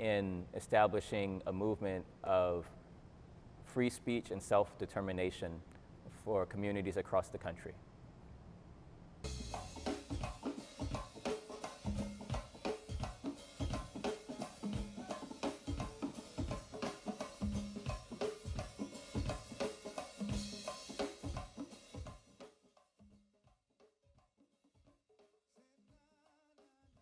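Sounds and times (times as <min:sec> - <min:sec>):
fast drum groove: 0:09.3 - 0:22.8.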